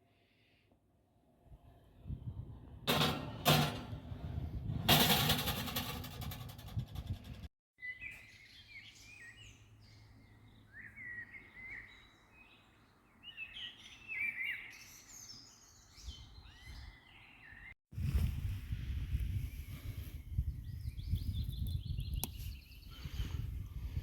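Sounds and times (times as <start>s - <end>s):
songbirds chirping: 7.8s - 17.8s, 19.5s - 23.5s.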